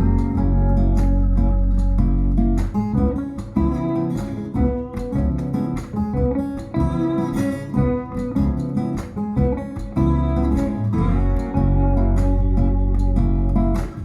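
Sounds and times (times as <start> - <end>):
deep sustained bass note: 0.0 - 3.1
acoustic guitar music: 0.0 - 14.0.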